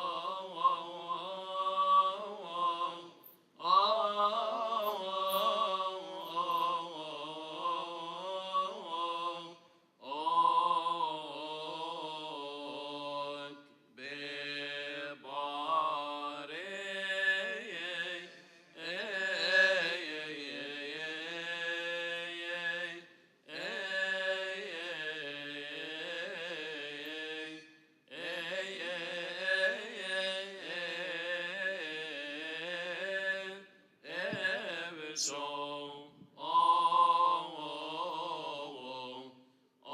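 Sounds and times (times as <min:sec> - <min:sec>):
man chanting: 0:00.0 - 0:09.4, 0:14.0 - 0:27.6, 0:28.2 - 0:39.3.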